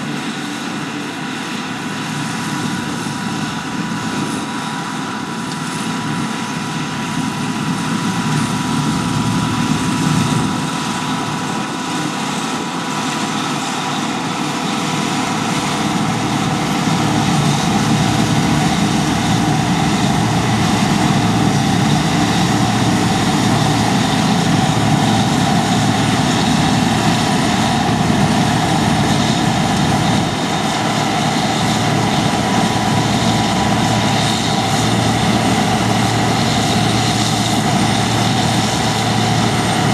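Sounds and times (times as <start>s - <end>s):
combine harvester engine drone: 0.0s - 39.9s
constant machinery whine: 0.0s - 39.9s.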